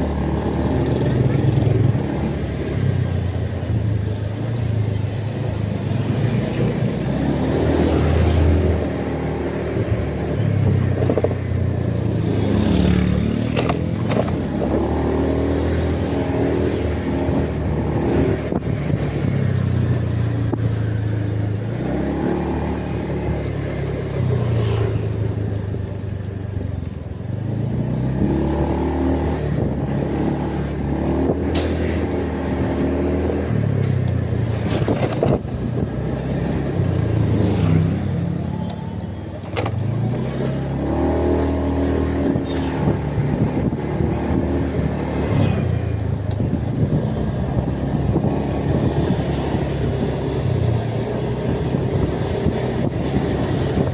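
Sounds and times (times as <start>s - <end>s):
vehicle engine revving: 39.4s - 53.9s.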